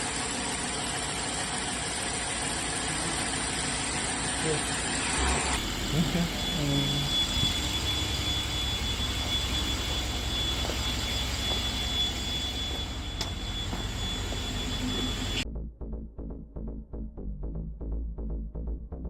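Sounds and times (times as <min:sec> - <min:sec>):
car engine running: 0:00.0 - 0:15.4
faint high whine: 0:02.3 - 0:15.4.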